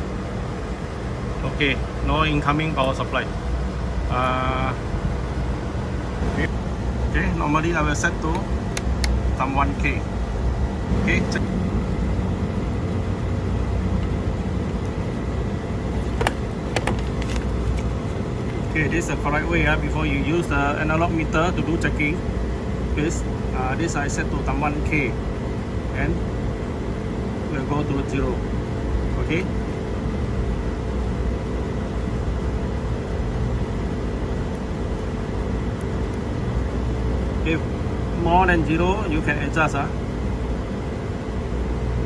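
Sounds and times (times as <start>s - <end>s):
low background rumble: 0.0s - 42.0s.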